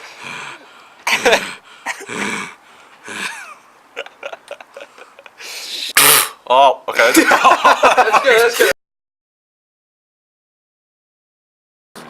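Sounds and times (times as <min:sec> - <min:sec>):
breathy vocal sounds: 0:00.0 - 0:03.4.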